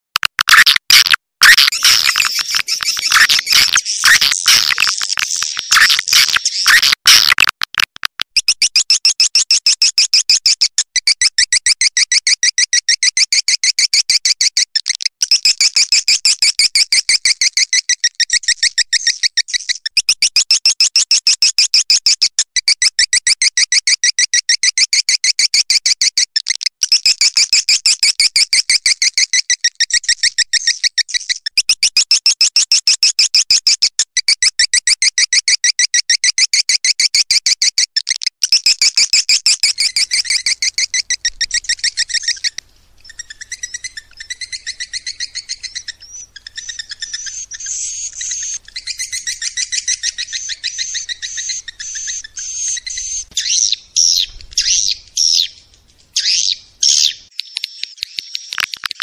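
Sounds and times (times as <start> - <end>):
high twittering chirps: 0.5 - 7.5, 15.2 - 20.6, 38.4 - 59.0
swiftlet high chattering: 0.5 - 7.5.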